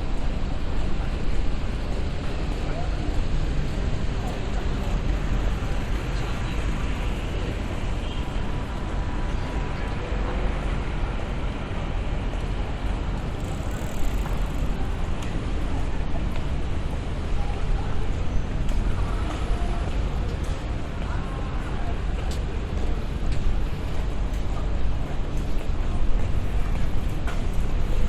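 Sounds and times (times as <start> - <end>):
faint indistinct voices: 0.0 - 28.0
low traffic rumble: 0.0 - 28.0.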